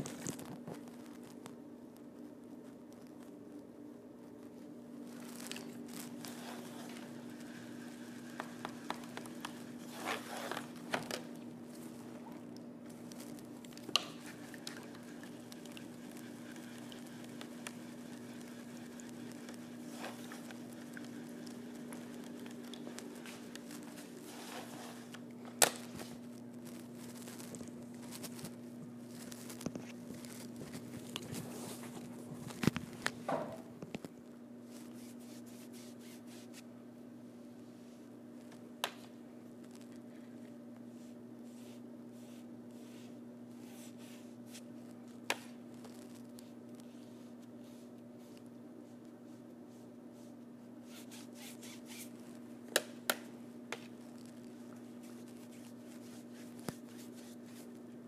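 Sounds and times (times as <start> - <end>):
paintbrush scrubbing on backdrop: 5.1 - 10.9, 14.2 - 25.1, 34.6 - 36.7, 40.9 - 44.9, 45.9 - 52.4, 54.2 - 57.8.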